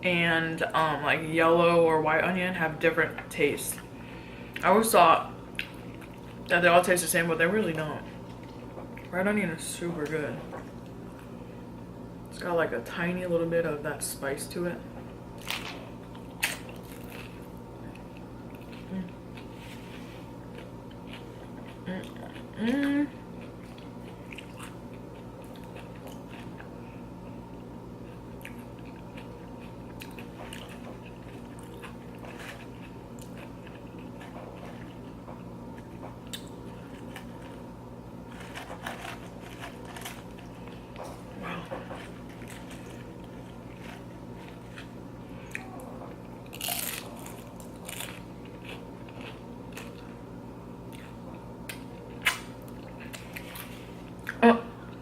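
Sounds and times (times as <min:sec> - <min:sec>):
person chewing crunchy chips: 0:15.4 - 0:27.3, 0:28.0 - 0:50.2.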